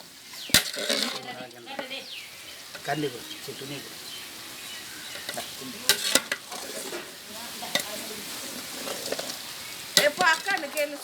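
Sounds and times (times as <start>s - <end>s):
chicken sizzling in a pot: 0.0s - 11.0s
ladle scraping and clinking on pot: 0.3s - 1.9s, 5.1s - 11.0s.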